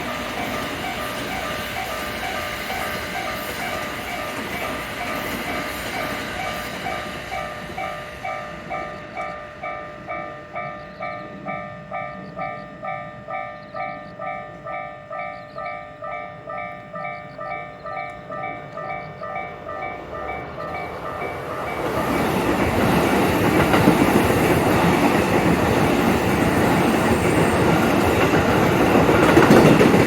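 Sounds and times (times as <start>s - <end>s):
passing train running noise: 0.0s - 30.0s
level-crossing electronic bell: 6.0s - 30.0s.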